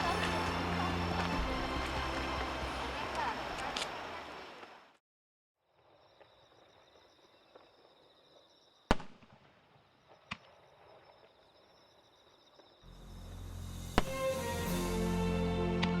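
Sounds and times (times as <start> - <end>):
insect chirring: 5.8 - 9.0, 9.8 - 13.4
fireworks bangs: 8.9 - 11.2.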